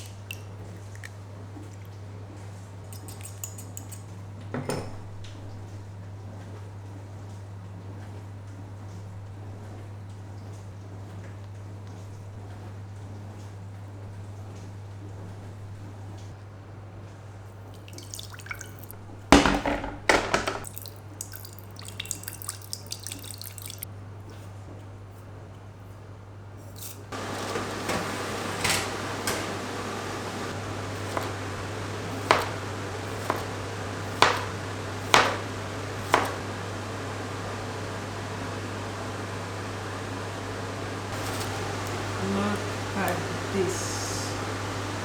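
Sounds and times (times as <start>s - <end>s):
water dripping: 0.0s - 2.0s, 17.6s - 19.0s, 20.5s - 23.9s
tap water gushing: 0.0s - 2.1s, 17.6s - 23.9s, 27.1s - 45.0s
kitchenware clinking: 2.9s - 5.2s, 18.0s - 20.7s
kitchenware clatter: 2.9s - 5.3s, 18.5s - 20.7s.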